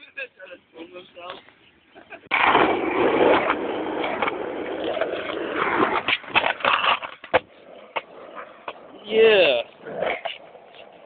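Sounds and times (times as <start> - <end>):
skateboard clacks: 2.3 - 11.0
skateboard rolling and scraping: 2.3 - 11.0.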